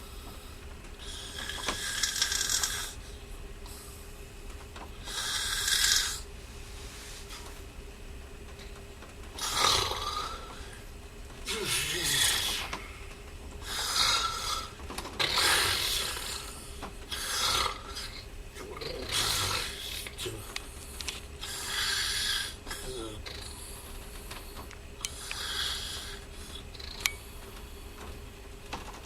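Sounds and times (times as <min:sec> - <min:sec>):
steady low hum: 0:00.0 - 0:29.0
person snoring: 0:01.0 - 0:03.0, 0:05.0 - 0:06.2, 0:09.4 - 0:10.8, 0:11.5 - 0:12.9, 0:13.6 - 0:20.4, 0:21.4 - 0:23.8, 0:25.1 - 0:27.1.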